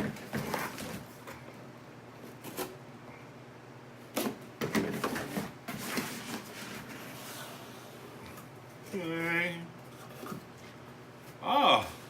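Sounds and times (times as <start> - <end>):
cardboard scraping and rustling: 0.0 - 1.2, 4.2 - 7.9.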